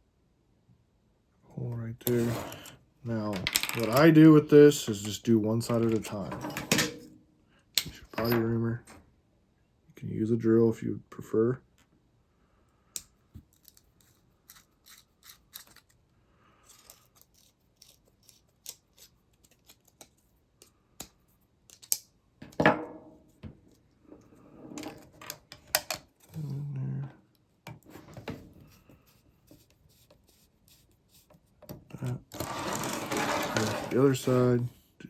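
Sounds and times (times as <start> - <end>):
rubbing and handling sounds: 2.0 - 7.1, 16.6 - 21.9, 27.5 - 35.0.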